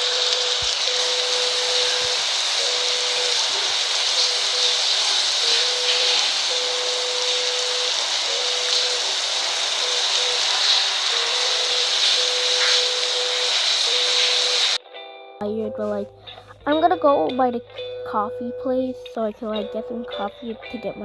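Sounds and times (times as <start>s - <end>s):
faint tone: 0.0s - 9.2s
shower spray hissing: 0.0s - 14.8s.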